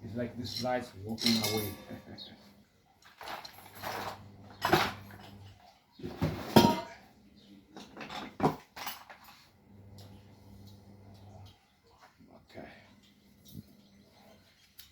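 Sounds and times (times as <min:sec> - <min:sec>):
metal tools clattering: 0:00.4 - 0:02.4, 0:03.0 - 0:05.3, 0:06.1 - 0:07.0, 0:07.8 - 0:09.5.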